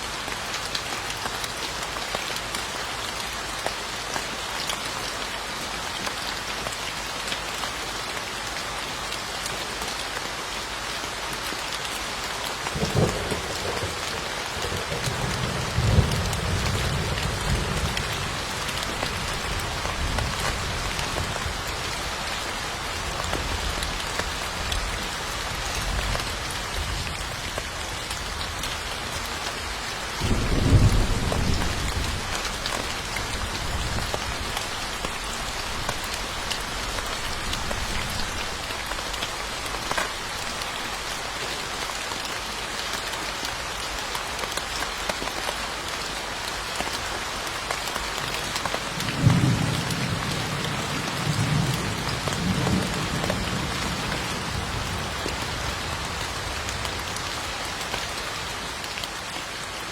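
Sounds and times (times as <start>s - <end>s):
steady rain falling: 0.0s - 59.9s
thunder rumbling: 12.7s - 20.7s, 30.2s - 32.3s.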